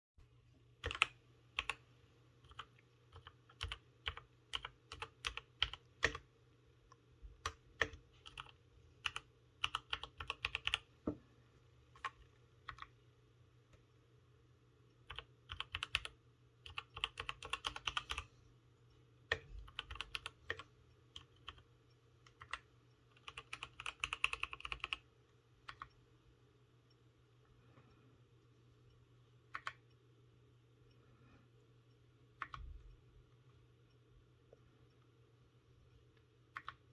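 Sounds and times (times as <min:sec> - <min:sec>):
mechanical keyboard typing: 0:00.8 - 0:01.8, 0:02.4 - 0:06.3, 0:07.4 - 0:10.9, 0:12.0 - 0:12.9, 0:15.0 - 0:18.3, 0:19.3 - 0:25.1, 0:29.5 - 0:29.8, 0:36.5 - 0:36.9.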